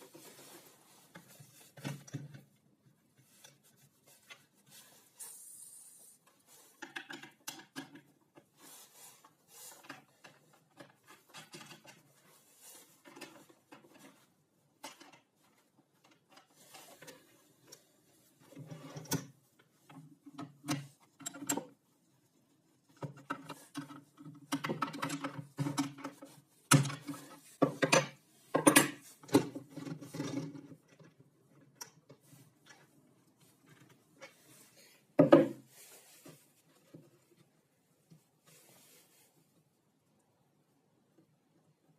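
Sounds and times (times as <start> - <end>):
hard parts clicking and knocking: 6.3 - 8.6, 18.5 - 21.8, 22.9 - 33.0, 35.2 - 35.6.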